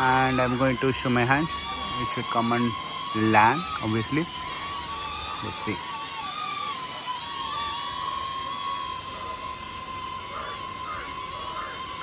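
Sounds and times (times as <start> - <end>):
drone propellers whining: 0.0 - 12.0.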